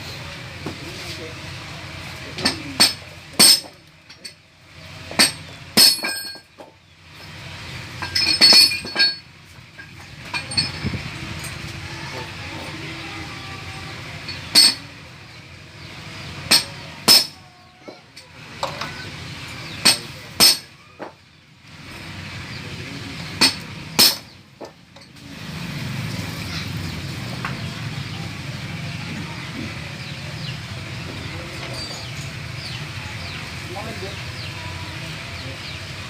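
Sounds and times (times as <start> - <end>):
tools clinking on metal engine parts: 2.3 - 11.8, 14.2 - 15.0, 16.3 - 21.3, 23.4 - 25.2, 31.5 - 32.8.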